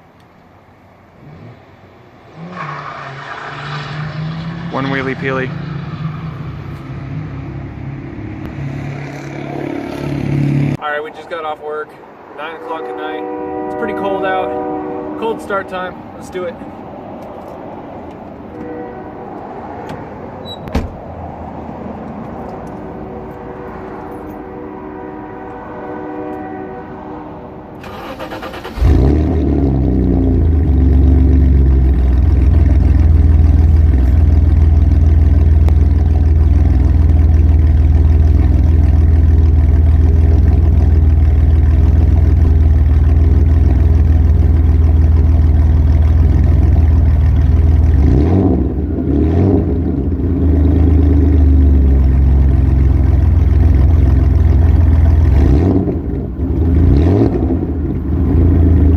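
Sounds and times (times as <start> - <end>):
car engine idling: 27.8 - 48.0, 49.9 - 55.5.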